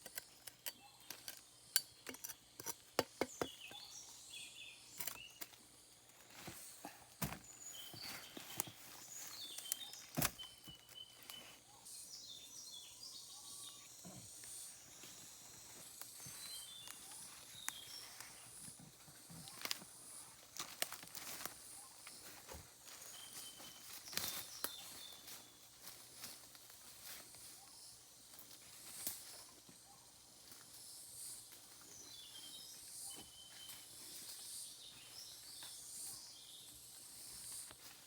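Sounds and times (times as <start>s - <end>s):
birds chirping: 3.0s - 25.6s
twigs snapping in undergrowth: 7.2s - 11.4s, 20.5s - 21.6s, 23.8s - 26.7s.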